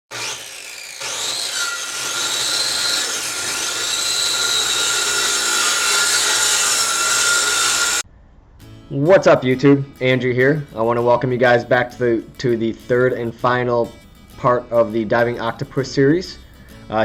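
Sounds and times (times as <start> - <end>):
electric sander whining: 0.1 - 8.0.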